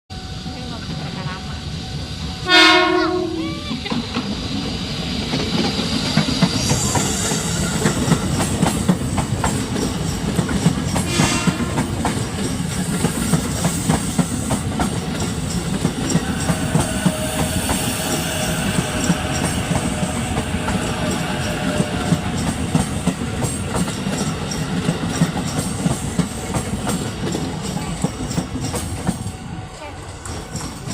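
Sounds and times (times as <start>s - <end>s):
train rumble: 0.1s - 30.9s
train horn blast: 2.4s - 3.6s, 11.0s - 12.0s, 16.2s - 22.2s.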